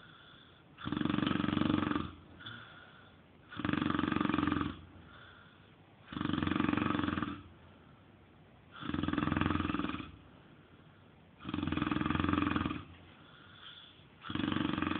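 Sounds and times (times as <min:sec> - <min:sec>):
quiet breathing: 0:00.0 - 0:01.4, 0:02.0 - 0:11.7, 0:12.4 - 0:14.9
man snoring: 0:00.8 - 0:02.8, 0:03.5 - 0:05.3, 0:06.0 - 0:07.5, 0:08.7 - 0:10.2, 0:11.4 - 0:12.9, 0:14.2 - 0:14.9.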